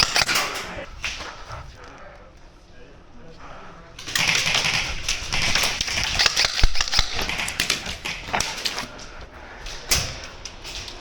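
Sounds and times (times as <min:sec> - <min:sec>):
airsoft guns firing: 0:00.0 - 0:00.8, 0:04.0 - 0:08.9.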